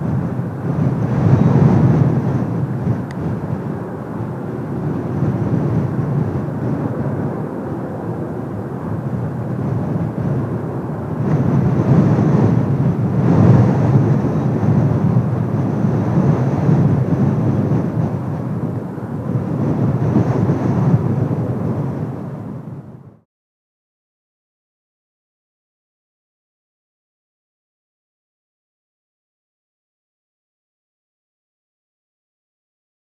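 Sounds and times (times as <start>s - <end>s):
distant jet rumble: 0.0s - 23.2s
wind gusting on microphone: 0.0s - 23.2s.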